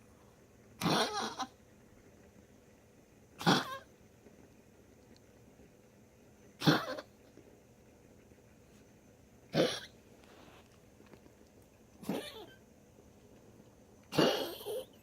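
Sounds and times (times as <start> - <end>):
dog coughing: 0.8 - 1.5, 3.4 - 3.9, 6.6 - 7.1, 9.5 - 10.0, 12.0 - 12.6, 14.1 - 15.0.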